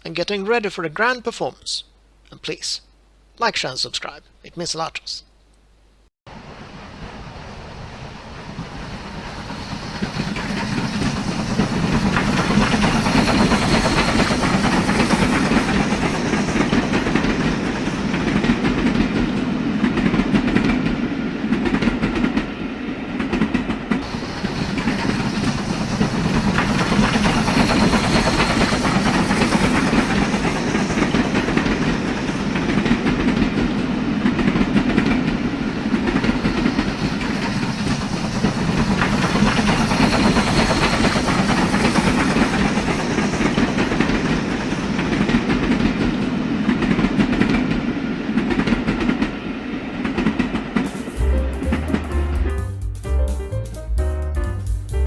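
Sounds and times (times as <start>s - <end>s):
train rumbling on rails: 6.3s - 52.7s
wheels clacking over rail joints: 9.1s - 22.5s, 23.3s - 47.8s.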